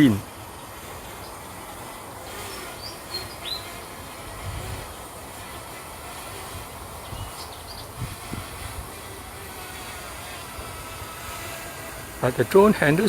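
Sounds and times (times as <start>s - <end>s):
high bird chirps: 2.5s - 3.8s, 7.0s - 8.0s
strong wind: 4.3s - 5.1s, 6.4s - 9.3s.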